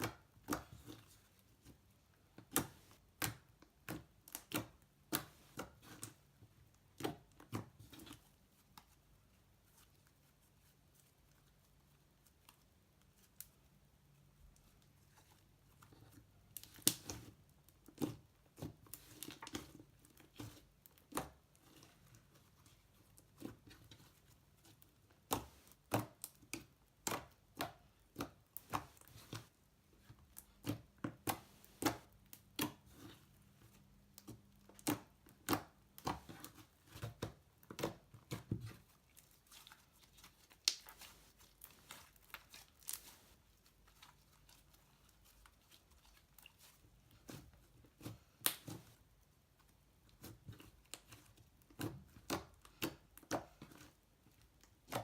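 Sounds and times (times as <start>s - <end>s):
slime squished by hand: 34.2s - 49.0s.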